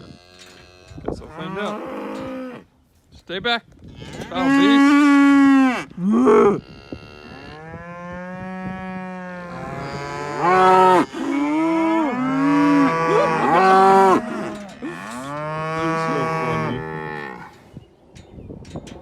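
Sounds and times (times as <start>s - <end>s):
cattle mooing: 4.0s - 6.6s, 7.2s - 17.6s.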